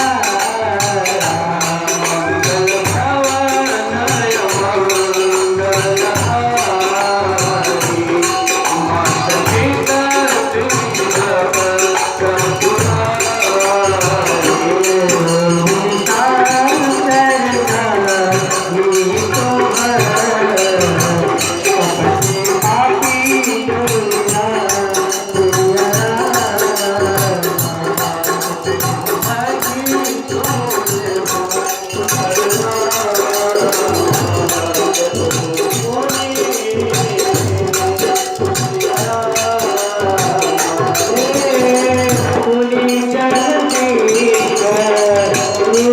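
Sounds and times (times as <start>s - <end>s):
jingling hand percussion: 0.0s - 45.9s
men singing a devotional song: 0.0s - 45.9s.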